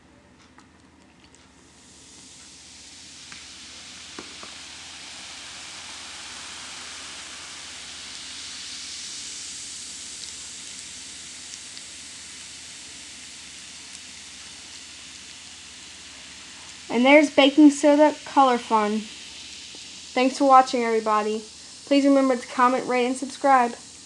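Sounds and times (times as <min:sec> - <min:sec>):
fizzing bubbles hiss: 0:01.4 - 0:24.0
faint bubble pops: 0:04.1 - 0:04.6.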